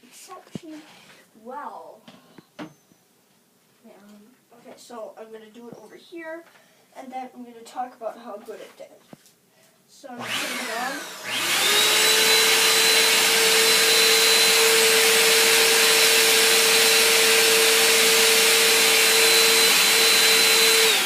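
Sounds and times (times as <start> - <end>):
vacuum cleaner running: 10.2 - 21.0.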